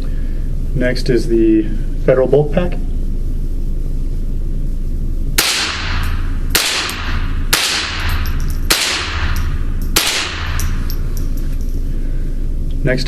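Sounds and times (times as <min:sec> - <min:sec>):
suppressed gunshots echoing: 0:05.4 - 0:10.9.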